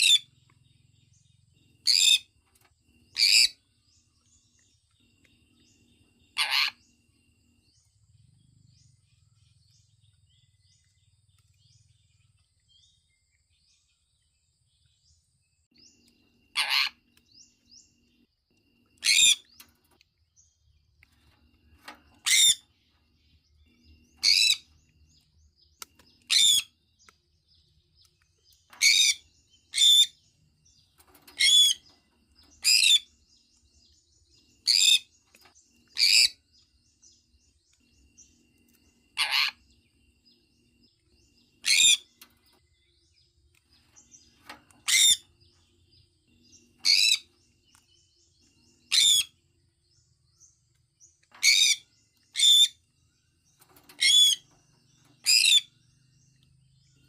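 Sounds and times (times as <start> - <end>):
parrot chirping: 3.1 - 3.6, 6.3 - 6.8, 16.5 - 17.1, 19.0 - 19.5, 22.2 - 22.7, 24.2 - 24.7, 25.8 - 26.8, 28.8 - 30.2, 31.2 - 31.8, 32.6 - 33.1, 34.6 - 35.1, 35.9 - 36.4, 39.2 - 39.6, 41.6 - 42.2, 44.8 - 45.3, 46.8 - 47.3, 48.9 - 49.4, 51.4 - 52.8, 53.8 - 54.6, 55.2 - 55.7.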